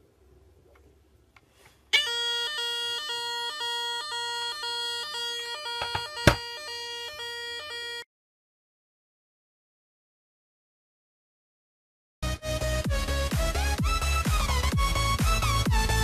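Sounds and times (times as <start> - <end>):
fire alarm tone: 1.9 - 8.1.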